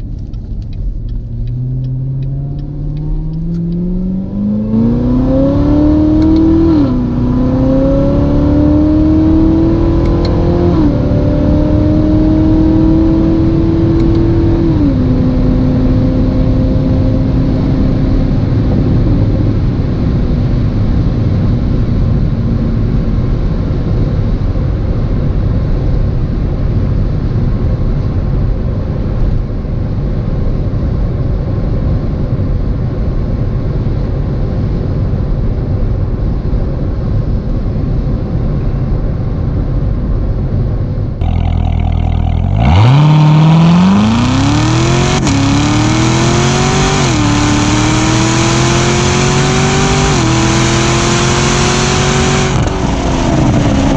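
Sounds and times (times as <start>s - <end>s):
car engine revving: 0.0s - 20.2s, 41.2s - 53.9s
car engine and road rumble: 0.0s - 53.9s.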